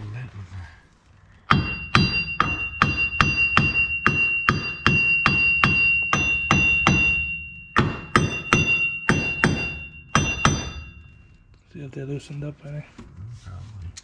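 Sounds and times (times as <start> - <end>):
hammer blows on metal: 1.5 - 11.2.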